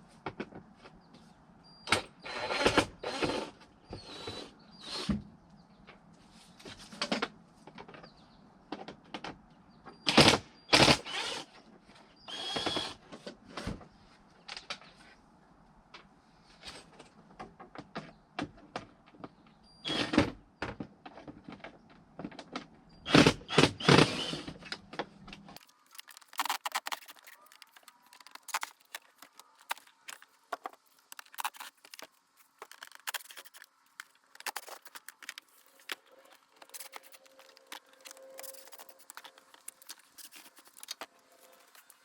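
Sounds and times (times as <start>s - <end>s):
parts and tools clicking: 25.5s - 42.0s.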